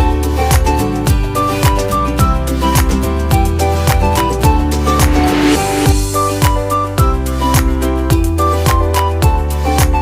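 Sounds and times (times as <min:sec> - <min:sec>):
music with steady beat: 0:00.0 - 0:10.0.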